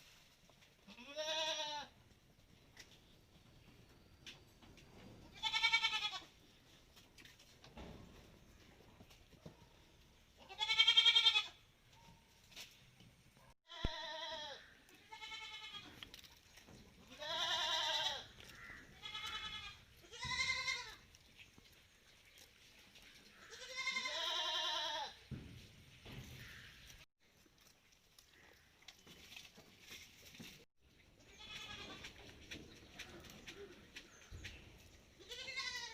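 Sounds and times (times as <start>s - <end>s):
goat bleating: 0.8s - 1.9s, 5.3s - 6.3s, 10.4s - 11.6s, 13.7s - 16.0s, 17.0s - 21.0s, 23.4s - 25.2s, 31.3s - 32.1s, 35.2s - 35.9s.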